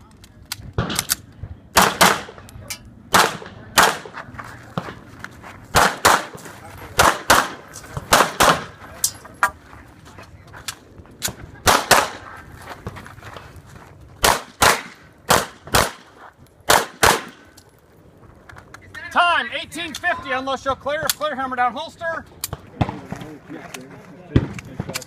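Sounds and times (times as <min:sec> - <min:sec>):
pistol shots: 0:01.8 - 0:02.4, 0:03.1 - 0:04.1, 0:05.8 - 0:06.4, 0:07.0 - 0:08.7, 0:11.6 - 0:12.2, 0:14.2 - 0:16.0, 0:16.7 - 0:17.4.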